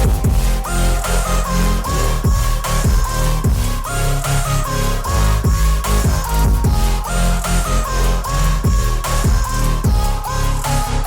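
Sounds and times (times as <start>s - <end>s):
instrumental electronic pop music: 0.0s - 11.0s.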